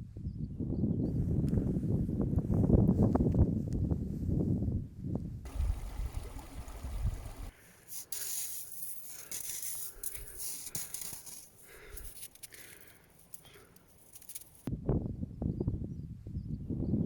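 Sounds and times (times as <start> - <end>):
wind buffeting microphone: 0.0 - 7.5, 14.7 - 17.0
rustling and crunching: 7.7 - 14.7.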